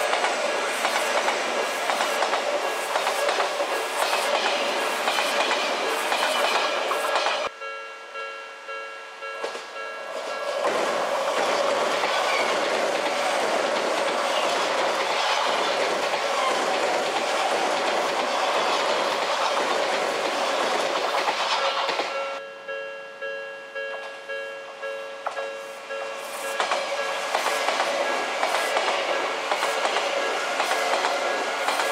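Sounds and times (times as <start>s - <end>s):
electric train passing: 0.0s - 31.9s
level-crossing bell clanging: 6.2s - 11.8s, 20.8s - 30.4s.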